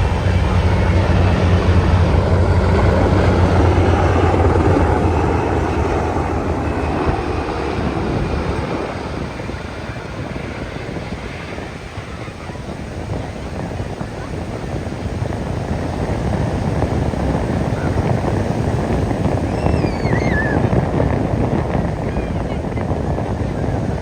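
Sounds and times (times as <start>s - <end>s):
low engine drone: 0.0s - 11.9s
steady rushing noise: 0.0s - 24.0s.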